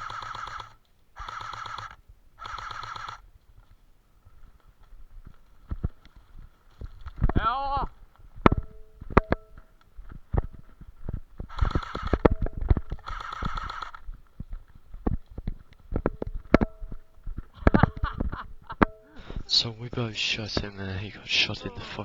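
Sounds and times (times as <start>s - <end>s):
toy gun full-auto bursts: 0.0s - 3.2s, 11.5s - 14.0s.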